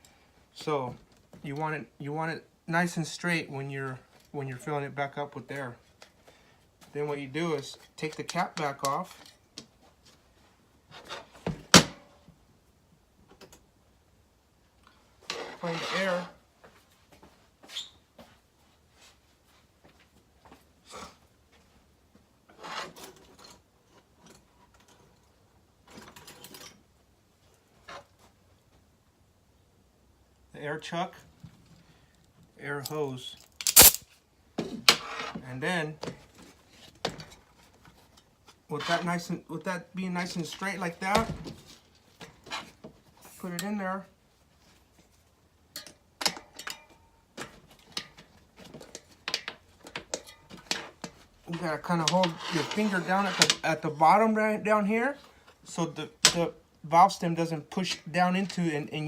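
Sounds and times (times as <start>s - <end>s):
rubbing and scraping handling noises: 6.8s - 11.5s, 15.0s - 21.8s, 22.4s - 26.6s, 32.6s - 45.4s, 47.4s - 56.5s
air hose chuck clicking on valve: 33.6s - 34.0s.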